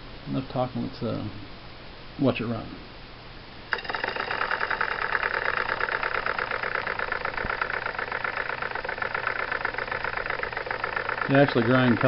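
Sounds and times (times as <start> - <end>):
toy steam engine chuffing: 3.7 - 12.0.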